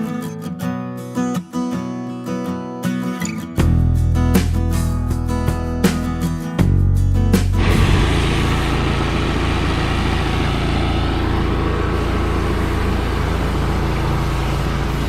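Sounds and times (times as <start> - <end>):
large engine running: 7.6 - 15.0.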